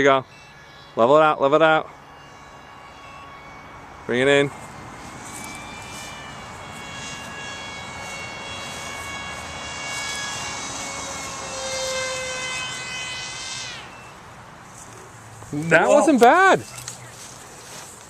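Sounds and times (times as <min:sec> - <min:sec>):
electric model plane motor whine: 0:00.0 - 0:15.0.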